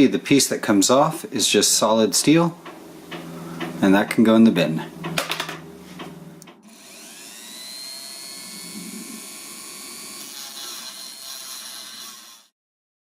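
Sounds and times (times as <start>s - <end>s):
small motor whining: 6.3s - 12.5s.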